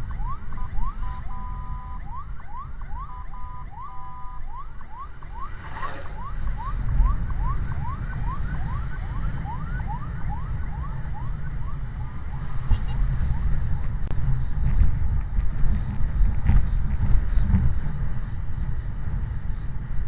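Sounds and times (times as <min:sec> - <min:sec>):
two-note siren tones: 0:00.0 - 0:12.5
siren yelping: 0:00.0 - 0:14.0
vehicle and road rumble: 0:00.0 - 0:20.0.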